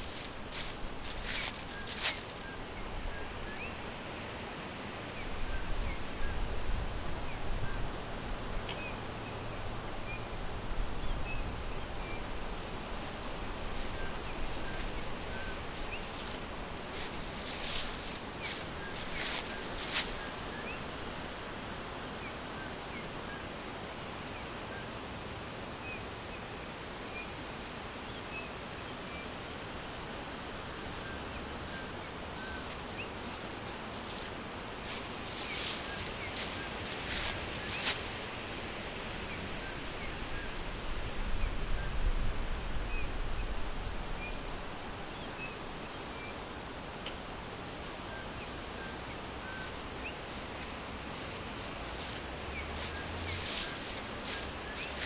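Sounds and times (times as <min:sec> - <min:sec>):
brief rustles: 0:00.0 - 0:02.7, 0:13.9 - 0:20.4, 0:32.4 - 0:38.3, 0:50.3 - 0:55.0
steady background hiss: 0:00.0 - 0:41.4, 0:42.5 - 0:55.0.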